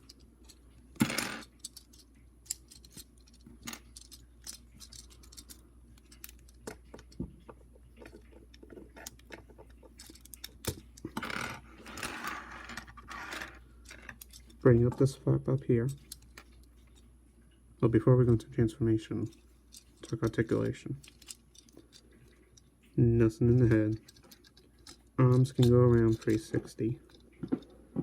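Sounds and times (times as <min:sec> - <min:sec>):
plastic toy pieces clicking: 0:01.2 - 0:07.2, 0:09.0 - 0:11.2, 0:13.1 - 0:14.6.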